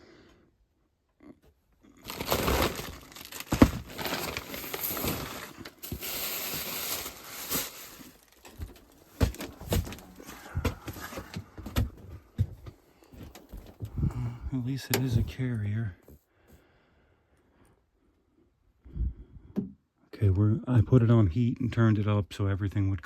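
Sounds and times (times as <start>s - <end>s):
rustling crinkling noise: 2.0s - 16.2s.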